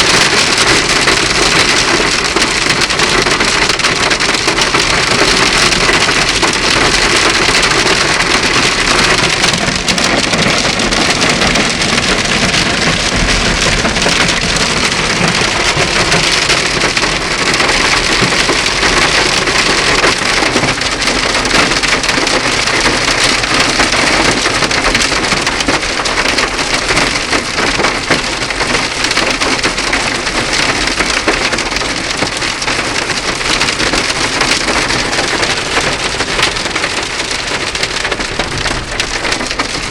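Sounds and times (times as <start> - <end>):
hail and rain pelting a car: 0.0 - 39.9.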